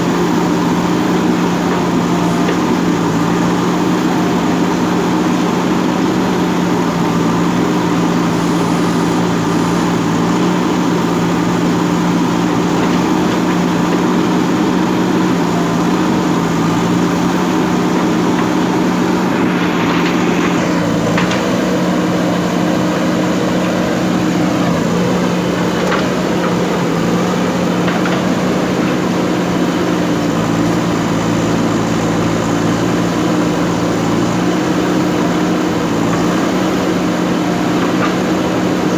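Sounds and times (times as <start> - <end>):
diesel engine running under load: 0.0 - 38.9
brief rushing noise: 18.6 - 21.9.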